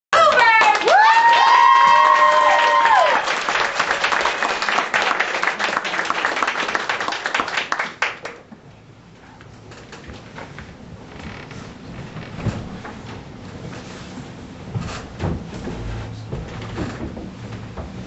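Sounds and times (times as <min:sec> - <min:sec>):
audience whooping: 0:00.2 - 0:06.5
audience applauding: 0:00.2 - 0:08.5.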